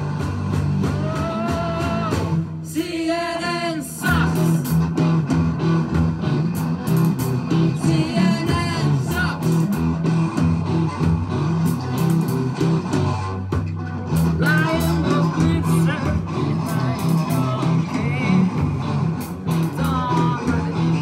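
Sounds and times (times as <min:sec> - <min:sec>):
live band playing guitars: 0:00.0 - 0:21.0
person singing: 0:00.8 - 0:04.8, 0:07.7 - 0:09.8, 0:14.2 - 0:21.0.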